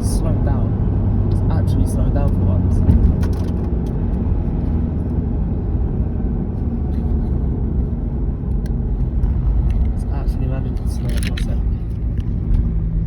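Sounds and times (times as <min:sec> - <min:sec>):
car engine and road noise: 0:00.0 - 0:13.0.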